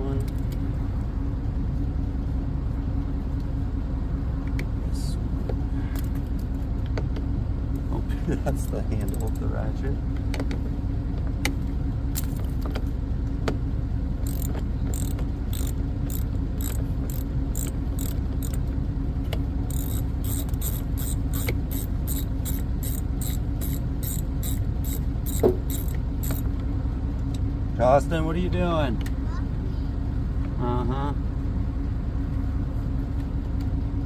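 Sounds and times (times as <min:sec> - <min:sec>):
steady low hum: 0:00.0 - 0:34.0
hand ratchet clicking: 0:14.2 - 0:18.6, 0:19.7 - 0:26.4.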